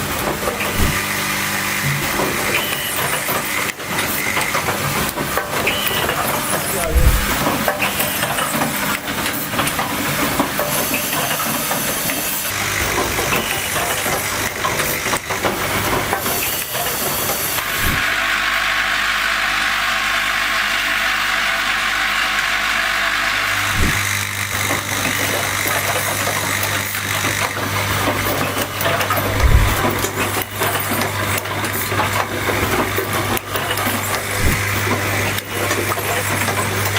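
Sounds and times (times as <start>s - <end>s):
machine hum and hiss: 0.0s - 9.4s, 10.2s - 18.1s, 23.6s - 24.4s, 27.0s - 36.6s
machine sharp clicks: 23.8s - 24.0s, 29.3s - 29.9s, 34.4s - 34.8s.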